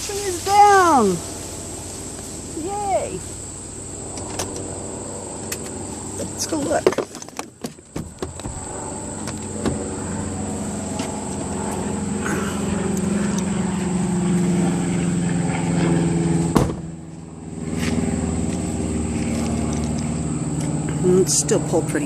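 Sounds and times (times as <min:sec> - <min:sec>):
vehicle engine running: 0:00.0 - 0:22.0
sharp knock: 0:16.5 - 0:16.8.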